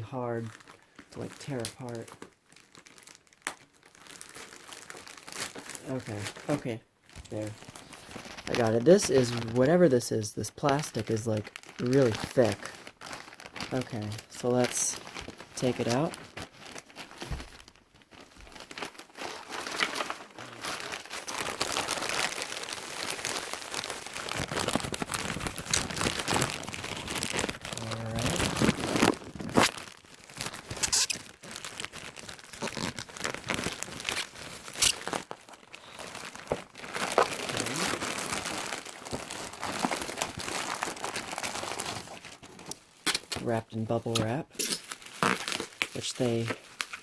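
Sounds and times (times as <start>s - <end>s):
plastic packaging crinkling: 0.4s - 47.0s
sharp crackles and clicks: 30.4s - 35.3s.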